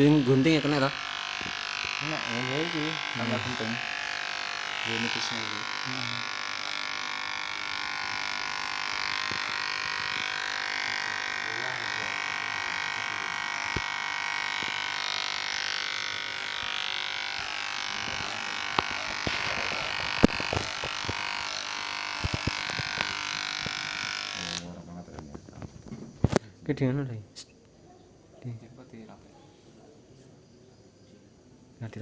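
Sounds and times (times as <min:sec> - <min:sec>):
electric hair clipper buzzing: 0:00.0 - 0:24.8
sharp clicks: 0:18.1 - 0:23.9.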